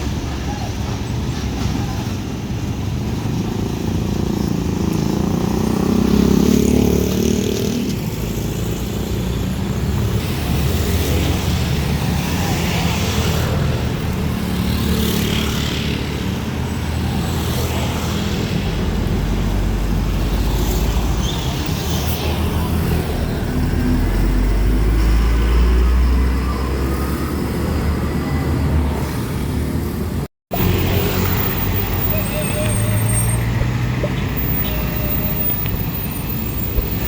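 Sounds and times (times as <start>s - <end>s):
truck diesel engines passing: 0.0s - 37.0s.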